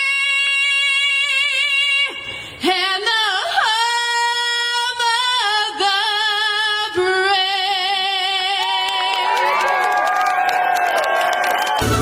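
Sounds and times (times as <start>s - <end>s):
woman singing with vibrato: 0.0s - 9.6s.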